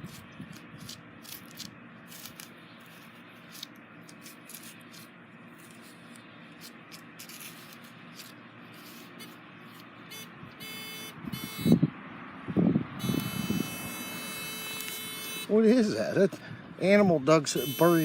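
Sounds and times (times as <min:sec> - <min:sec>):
metal detector tone: 0:10.1 - 0:11.8, 0:13.0 - 0:15.5, 0:17.5 - 0:18.0.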